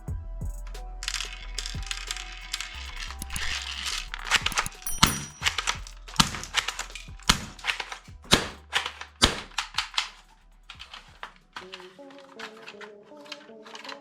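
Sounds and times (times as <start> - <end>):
plastic toy guns clicking: 3.1 - 9.6.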